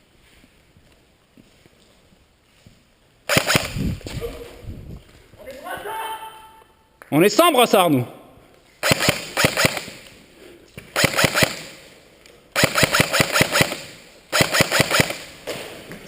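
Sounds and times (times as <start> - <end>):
airsoft rifle full-auto bursts: 3.3 - 4.0, 8.8 - 10.1, 10.9 - 11.9, 12.6 - 15.4.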